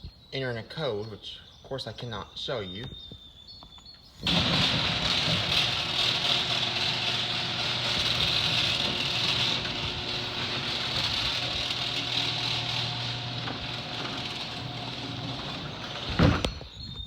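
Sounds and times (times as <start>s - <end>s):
garage door opener droning: 4.2s - 16.8s.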